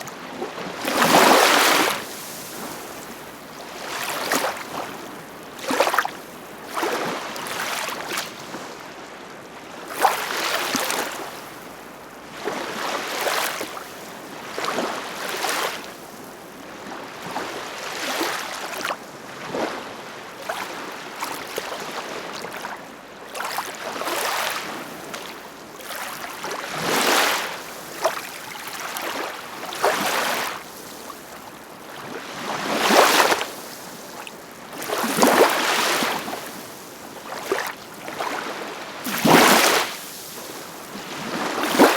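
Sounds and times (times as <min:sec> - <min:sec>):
ocean waves breaking: 0:00.0 - 0:08.3, 0:26.0 - 0:41.9.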